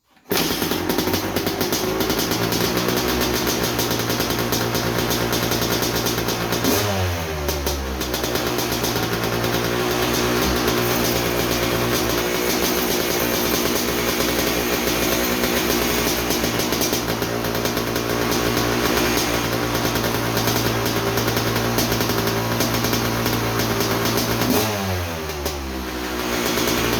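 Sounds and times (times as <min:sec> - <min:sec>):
two-stroke engine running: 0:00.3 - 0:26.9.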